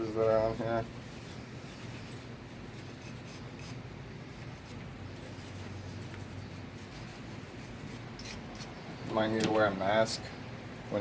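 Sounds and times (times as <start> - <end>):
wire brush scrubbing metal: 0.0 - 8.8.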